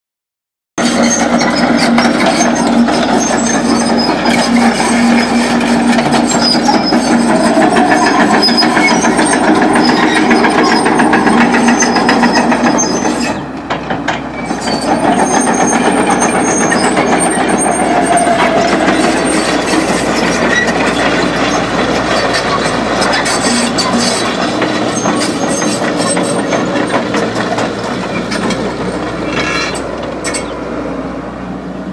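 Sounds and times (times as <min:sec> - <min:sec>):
metallic rattling and clanking: 0:00.8 - 0:30.6
excavator diesel engine running: 0:00.8 - 0:31.9.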